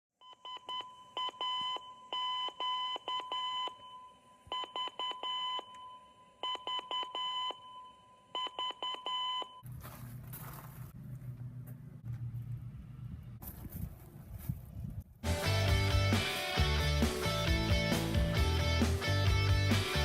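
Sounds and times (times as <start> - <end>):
morse code beeps: 0.2 - 9.6.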